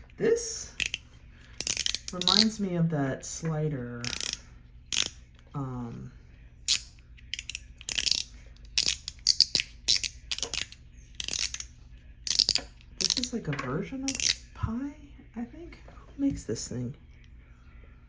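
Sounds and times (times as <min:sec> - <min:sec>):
metal fidget toy clicking: 0:00.8 - 0:01.0, 0:01.6 - 0:02.6, 0:04.0 - 0:05.2, 0:06.7 - 0:13.4, 0:14.1 - 0:14.5.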